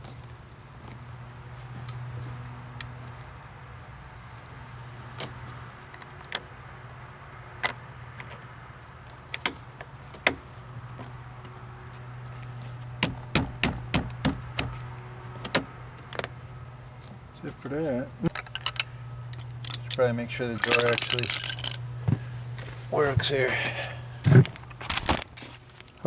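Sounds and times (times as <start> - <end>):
steady low hum: 16.5 - 25.4
sharp clicks and knocks: 18.3 - 21.8.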